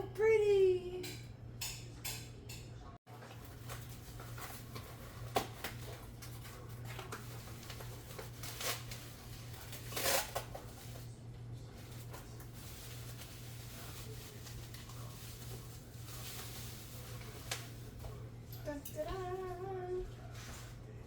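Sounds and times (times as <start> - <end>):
packaging rustling and scraping: 3.4 - 11.1, 11.8 - 18.1.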